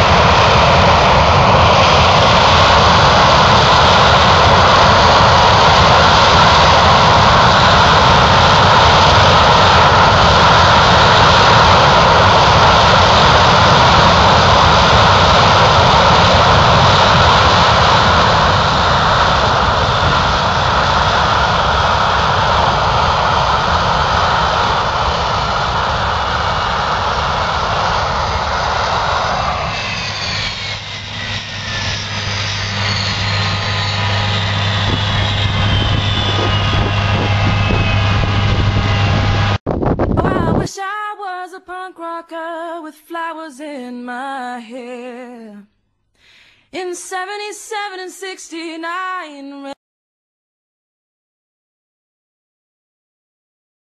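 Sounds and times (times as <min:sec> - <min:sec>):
loud aircraft engine: 0:00.0 - 0:40.6
whining tones sliding in pitch: 0:29.1 - 0:39.6.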